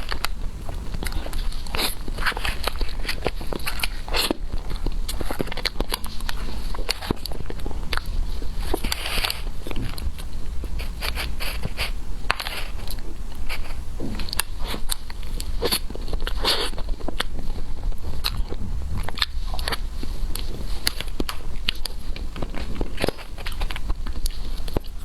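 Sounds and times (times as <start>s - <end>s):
person chewing and biting: 0.0s - 25.0s.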